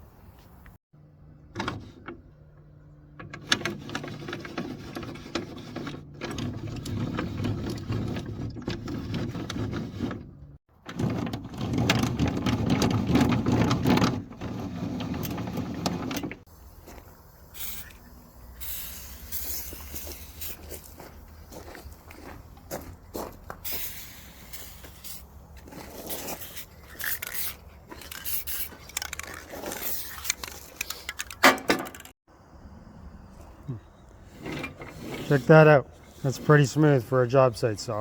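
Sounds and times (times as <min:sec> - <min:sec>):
saw crank gears clicking rattle: 0:26.1 - 0:32.1.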